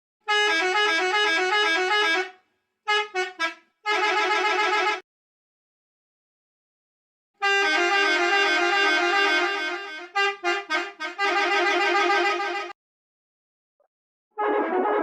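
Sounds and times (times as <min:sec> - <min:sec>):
bus horn honking: 0:00.3 - 0:05.0, 0:07.4 - 0:12.8, 0:14.4 - 0:15.0.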